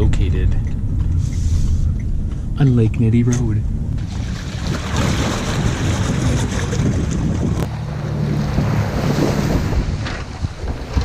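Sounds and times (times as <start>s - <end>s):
low hum: 0.0s - 11.0s
wind buffeting microphone: 0.0s - 11.0s
choppy water: 4.0s - 11.0s.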